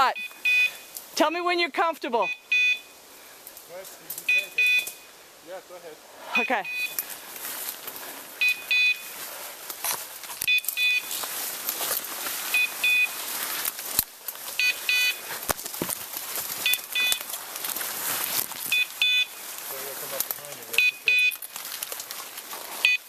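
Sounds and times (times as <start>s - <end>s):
dog collar double beep: 0.1s - 0.8s, 2.2s - 2.9s, 4.3s - 5.0s, 6.4s - 7.0s, 8.4s - 9.0s.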